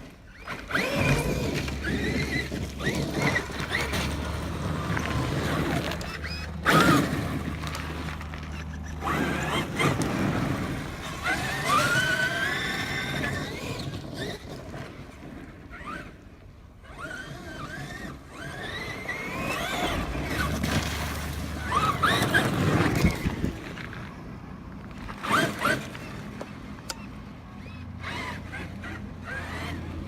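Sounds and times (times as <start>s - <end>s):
electric motor whining: 0.3s - 14.7s, 16.8s - 23.6s, 25.0s - 30.0s.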